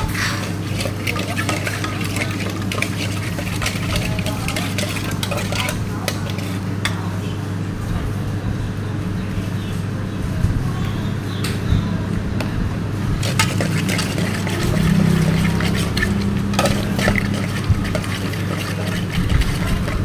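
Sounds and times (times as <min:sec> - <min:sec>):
steady low hum: 0:00.0 - 0:20.0
spoon clinking and scraping bowl: 0:00.1 - 0:06.6, 0:13.2 - 0:20.0.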